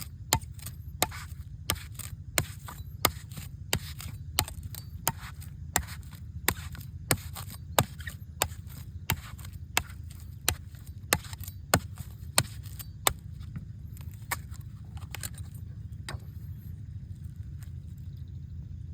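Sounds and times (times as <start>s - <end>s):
sharp strikes on coconut: 0.0s - 13.3s
steady low rumble: 0.0s - 18.9s.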